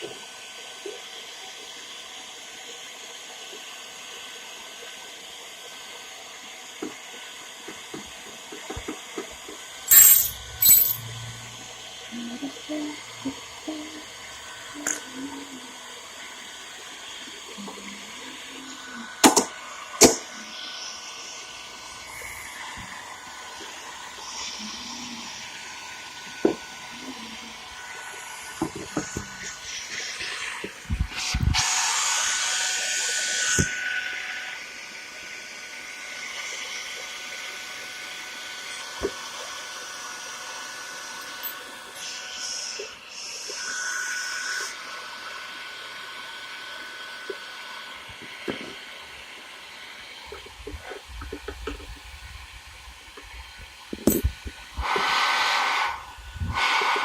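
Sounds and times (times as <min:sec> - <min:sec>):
hairdryer blowing: 0:05.7 - 0:33.8, 0:44.6 - 0:57.0.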